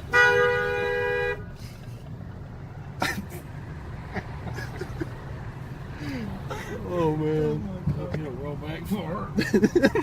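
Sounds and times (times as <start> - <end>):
truck two-note horn: 0.0 - 1.5.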